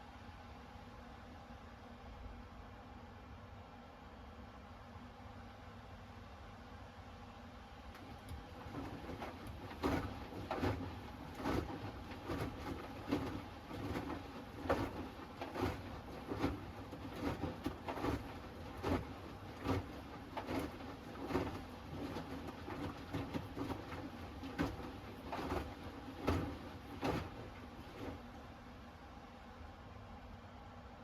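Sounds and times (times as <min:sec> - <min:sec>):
washing machine drum sloshing: 0:08.0 - 0:28.7.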